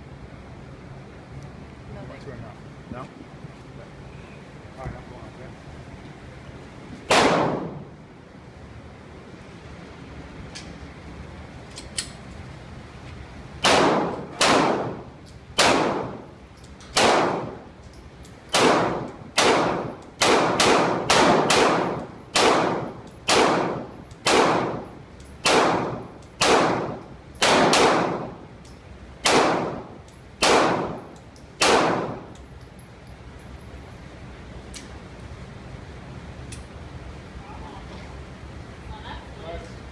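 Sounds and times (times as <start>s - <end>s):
pistol shots: 7.1s - 7.9s, 13.6s - 16.3s, 16.9s - 17.6s, 18.5s - 28.4s, 29.2s - 32.3s.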